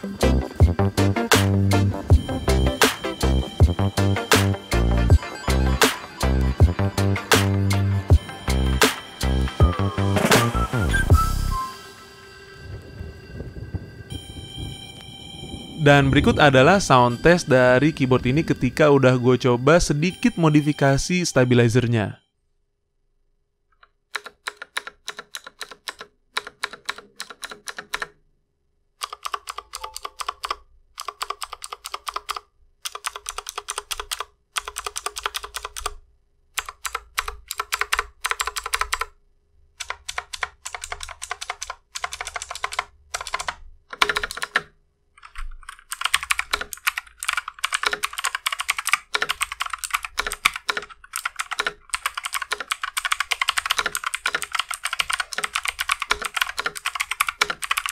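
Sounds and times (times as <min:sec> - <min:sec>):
clicky mechanical keyboard typing: 0:24.1 - 0:28.2, 0:29.0 - 0:36.0, 0:36.6 - 0:39.2, 0:39.8 - 0:57.9.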